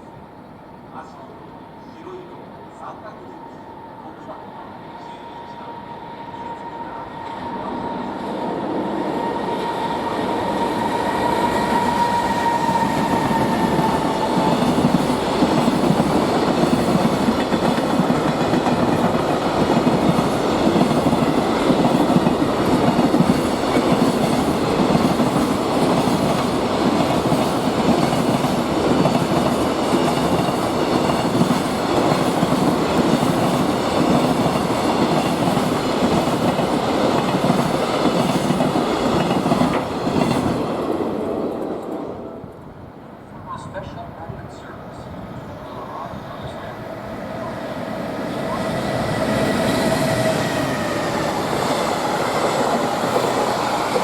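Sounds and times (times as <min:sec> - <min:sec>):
freight train wheels clacking: 0:07.8 - 0:42.2, 0:47.5 - 0:54.0.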